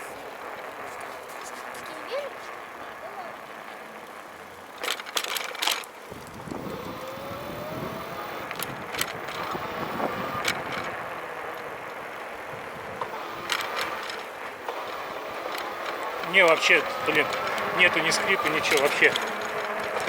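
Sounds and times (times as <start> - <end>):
tyre and wind noise: 0.0 - 20.0
electric motor whine: 6.1 - 20.0.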